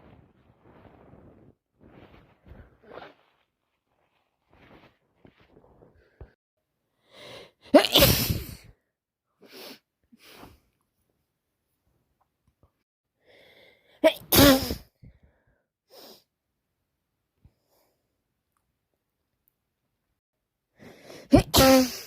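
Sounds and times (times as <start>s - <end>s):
woman sneezing: 7.7s - 8.7s, 14.0s - 14.9s, 21.2s - 22.0s.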